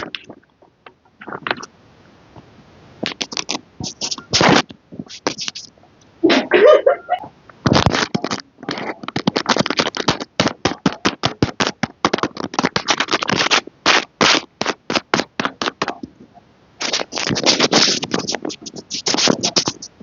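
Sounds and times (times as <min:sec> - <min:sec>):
packaging crinkling: 0:03.0 - 0:05.7, 0:07.7 - 0:15.9, 0:16.8 - 0:19.8.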